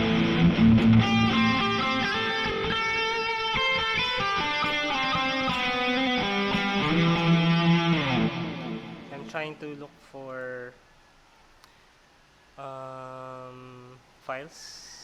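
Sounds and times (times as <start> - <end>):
electric guitar notes and chords: 0.0 - 9.4.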